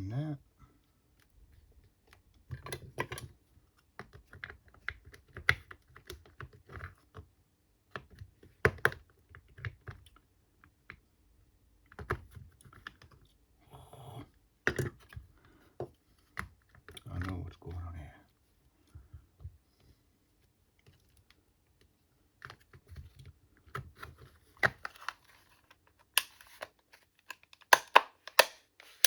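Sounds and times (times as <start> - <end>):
plastic parts clicking and tapping: 2.1 - 7.3, 20.8 - 29.0.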